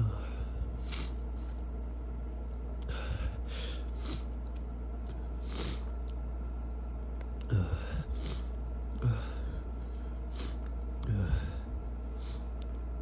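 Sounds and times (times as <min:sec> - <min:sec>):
person sniffing sharply: 0:00.8 - 0:01.2, 0:05.4 - 0:05.9, 0:08.1 - 0:08.5.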